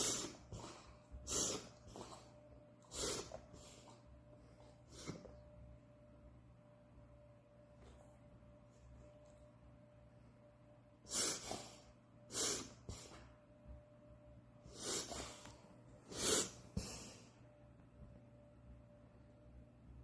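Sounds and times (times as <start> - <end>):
dog reverse sneezing: 0.0 - 3.9, 4.9 - 5.3, 11.1 - 13.2, 14.7 - 15.4, 16.1 - 17.2.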